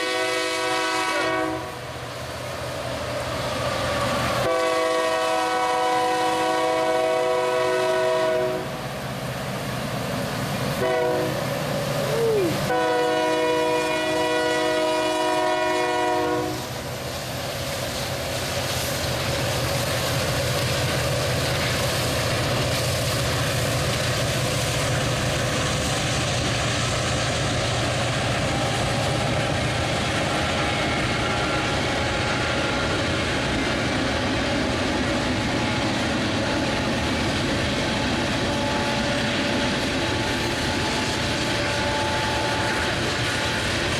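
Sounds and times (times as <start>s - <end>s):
locomotive air horn: 0.0s - 1.9s, 4.4s - 8.8s, 10.8s - 11.5s, 12.2s - 16.8s, 38.5s - 39.3s, 41.5s - 43.6s
locomotive engine noise: 0.0s - 43.9s
train rumbling past: 0.0s - 43.9s
wheels clacking on rails: 2.0s - 43.9s.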